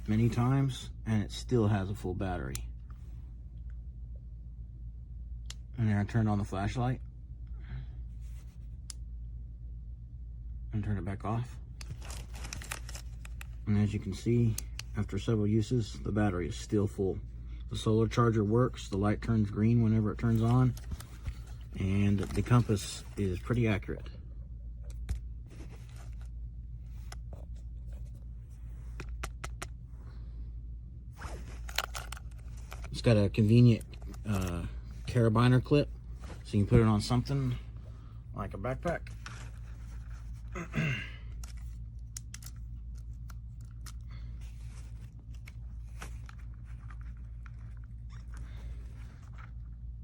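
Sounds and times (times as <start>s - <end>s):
low background hum: 0.0s - 50.0s
plastic power bank being handled: 11.8s - 13.6s, 28.9s - 29.8s, 31.3s - 33.1s, 41.4s - 49.6s.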